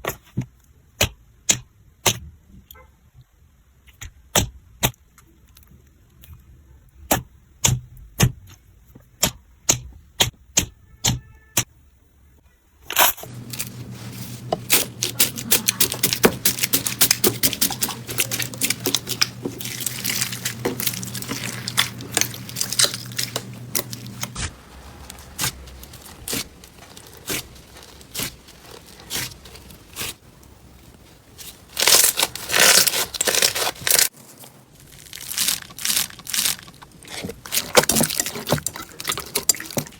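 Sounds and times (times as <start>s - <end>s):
crackly slime squishes: 13.0s - 39.9s
slime popping and crackling: 13.3s - 39.9s.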